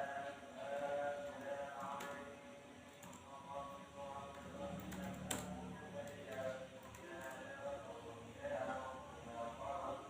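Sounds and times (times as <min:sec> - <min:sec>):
faint background music: 0:00.0 - 0:10.0
person singing: 0:00.0 - 0:10.0.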